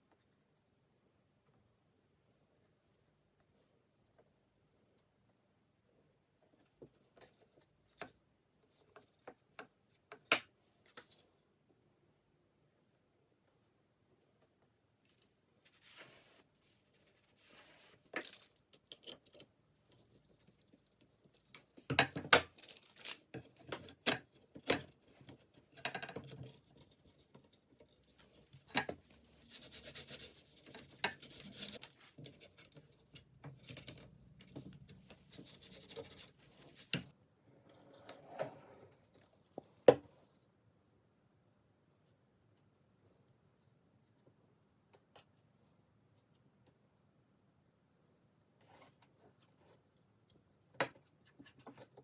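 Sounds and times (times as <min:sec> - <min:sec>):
light scraping and rubbing: 0:15.6 - 0:18.1, 0:26.4 - 0:37.1.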